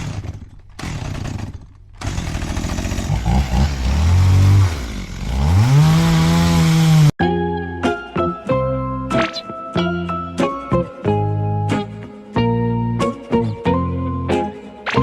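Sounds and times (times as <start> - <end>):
chainsaw revving: 0.0 - 7.2
music: 7.2 - 15.0.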